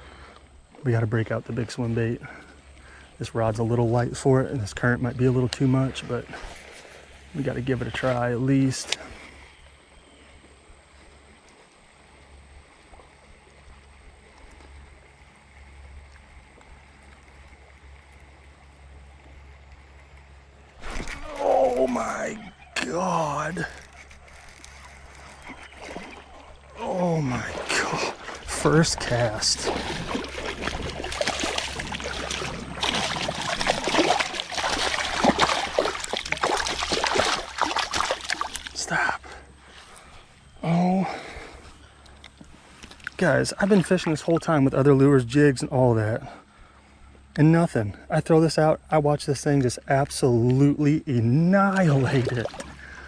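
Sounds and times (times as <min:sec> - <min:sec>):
water splashing: 0:20.7 - 0:40.0, 0:42.8 - 0:44.8, 0:51.6 - 0:53.0
creek current rushing: 0:20.8 - 0:39.2.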